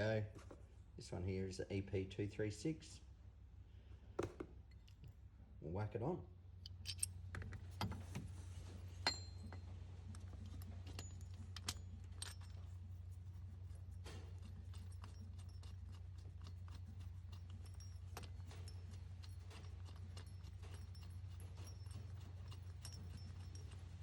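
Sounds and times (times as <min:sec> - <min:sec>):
steady low hum: 0:00.0 - 0:24.0
metal parts clicking and clinking: 0:06.6 - 0:08.2, 0:08.8 - 0:24.0.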